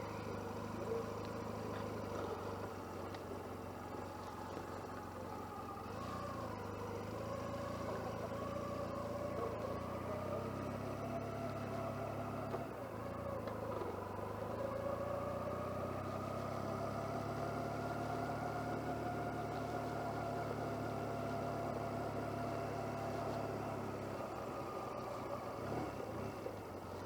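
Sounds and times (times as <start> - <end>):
motorcycle engine running: 0.0 - 27.0.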